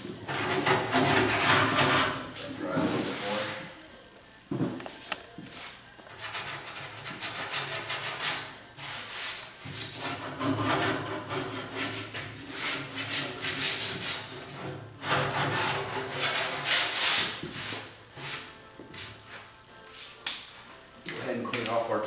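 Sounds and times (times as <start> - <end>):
rasp scraping body filler: 0.2 - 3.7, 6.1 - 19.2.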